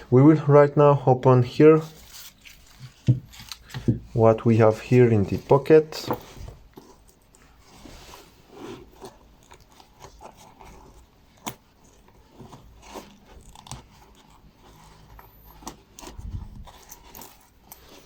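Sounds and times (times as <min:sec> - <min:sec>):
pouch contents rustling: 0:01.8 - 0:03.8, 0:04.7 - 0:18.0.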